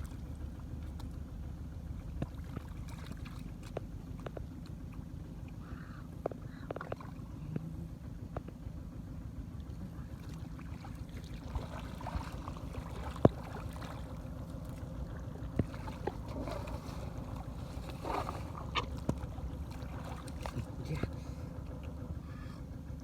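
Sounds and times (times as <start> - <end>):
water sloshing and splashing: 0.0 - 7.7, 9.4 - 22.3.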